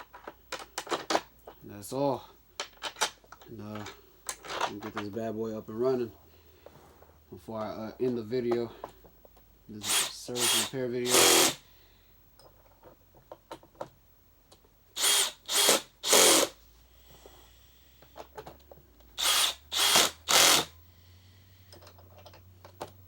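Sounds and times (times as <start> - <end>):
cordless drill motor whine: 9.8 - 11.7, 15.0 - 18.2, 19.2 - 21.6.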